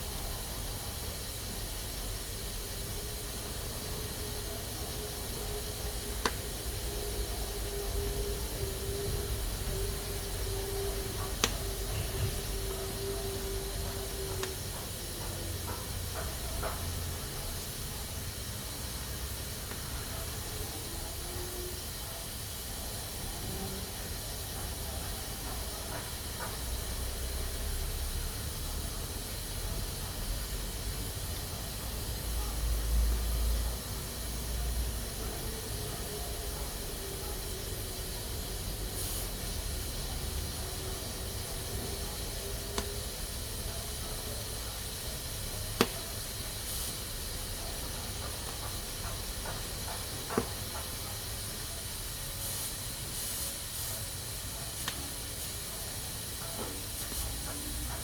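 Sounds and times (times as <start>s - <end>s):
pressure cooker hissing: 0.0s - 58.0s.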